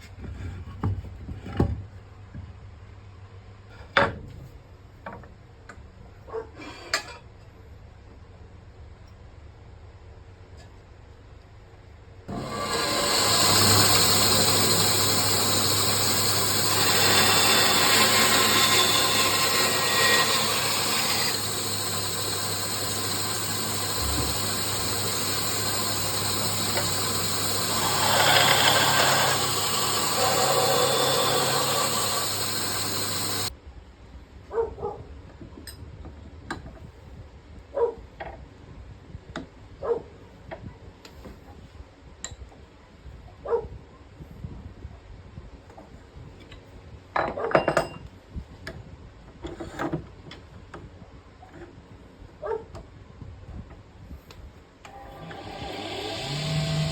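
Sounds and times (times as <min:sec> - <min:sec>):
lathe motor hum: 0:12.3 - 0:33.5, 0:54.9 - 0:56.9
tool cutting spinning wood: 0:12.3 - 0:33.5, 0:54.9 - 0:56.9.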